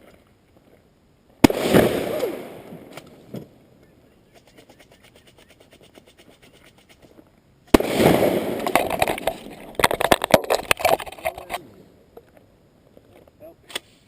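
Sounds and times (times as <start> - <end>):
exploding target blast: 1.4 - 3.0, 7.7 - 9.8
sharp cracks: 1.4 - 3.6, 7.7 - 11.7.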